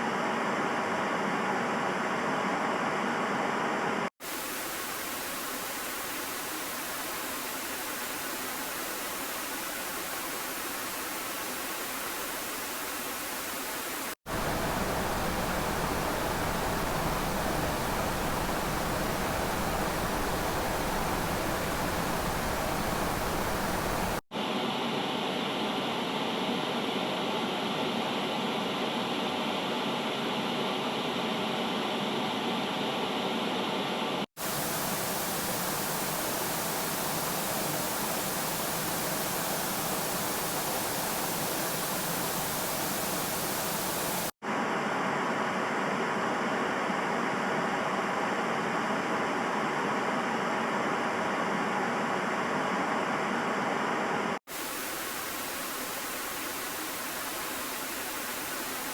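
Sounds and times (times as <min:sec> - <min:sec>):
rushing hiss with deep rumble: 0:04.2 - 0:24.2, 0:34.4 - 0:44.3, 0:54.5 - 0:58.9.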